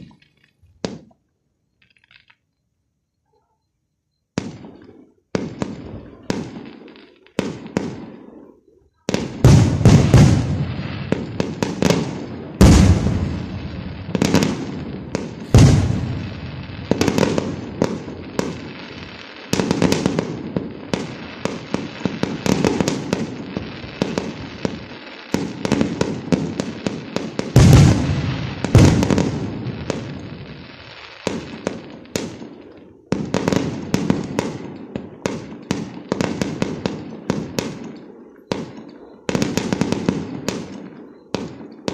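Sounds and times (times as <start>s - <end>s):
fireworks sharp bangs: 0.0s - 1.2s, 4.3s - 41.9s
heavy fireworks booms: 9.1s - 41.9s.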